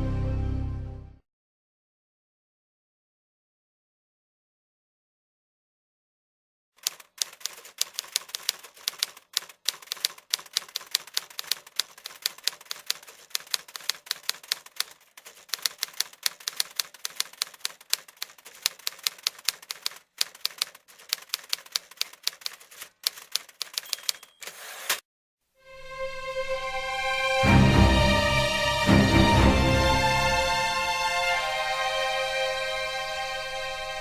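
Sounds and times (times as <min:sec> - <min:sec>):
typewriter keys clicking: 0:06.8 - 0:24.6.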